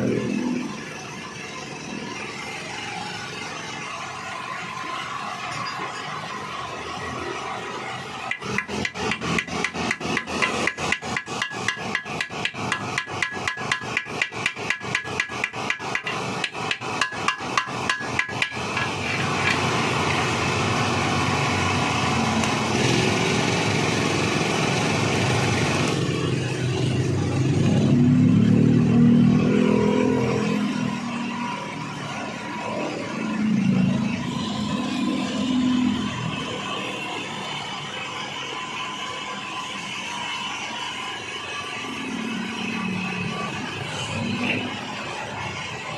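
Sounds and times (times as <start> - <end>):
hand tool scraping metal: 8.3 - 19.8.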